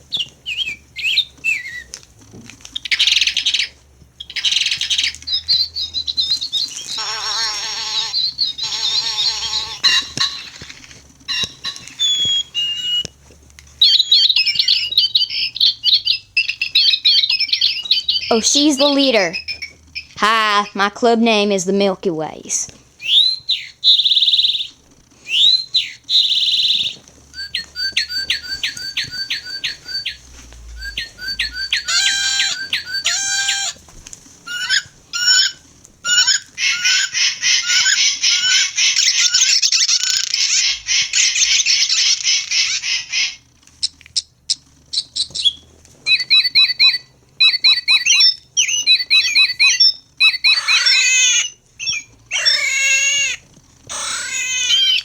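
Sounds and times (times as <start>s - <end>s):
recorded bird calls from toys: 0.0s - 2.0s, 2.8s - 13.2s, 13.8s - 55.0s.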